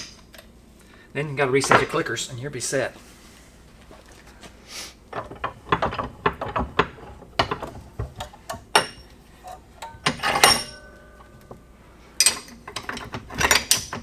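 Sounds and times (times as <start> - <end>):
metal tools clanking: 5.1 - 11.5, 12.2 - 14.0
metallic ringing: 9.8 - 11.4.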